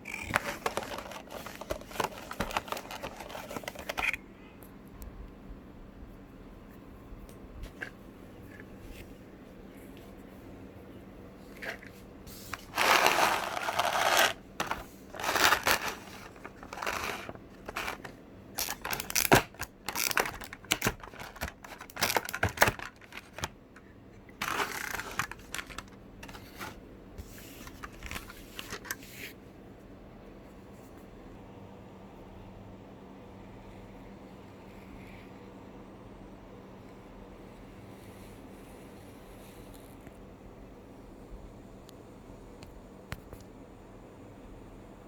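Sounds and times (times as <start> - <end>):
packaging rustling and crinkling: 0.1 - 4.2, 12.5 - 23.6, 24.4 - 29.0.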